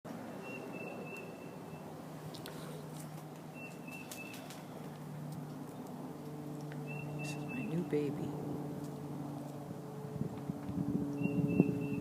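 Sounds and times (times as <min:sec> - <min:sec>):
small bird whistling: 0:00.4 - 0:01.8, 0:11.2 - 0:12.0.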